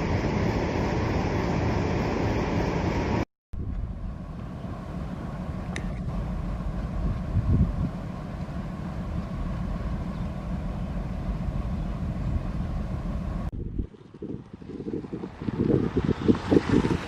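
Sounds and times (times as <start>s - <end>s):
passenger train rumbling: 0.0s - 13.5s.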